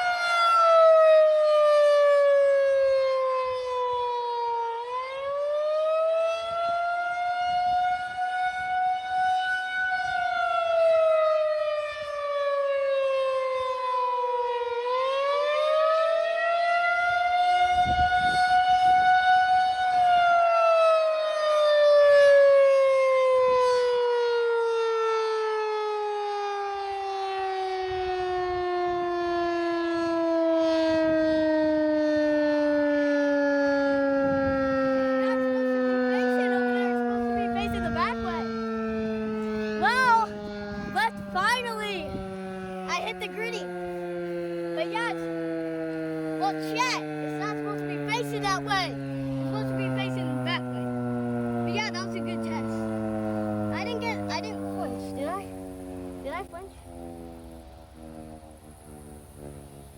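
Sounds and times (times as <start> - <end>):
tornado siren winding: 31.6 - 59.9.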